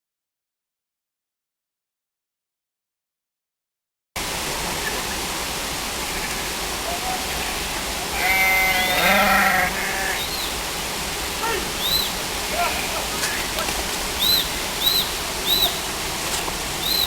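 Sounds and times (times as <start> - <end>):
flowing water rushing: 4.2 - 17.0
goat or sheep bleating: 8.1 - 10.2, 12.5 - 13.3.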